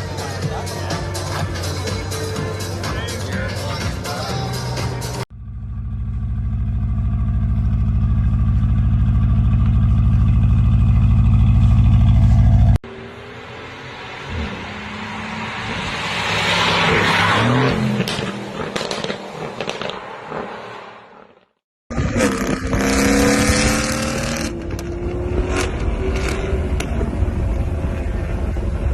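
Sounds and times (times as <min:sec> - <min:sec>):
deep car engine steady note: 0:00.0 - 0:13.2
car engine and exhaust rushing: 0:00.0 - 0:28.9.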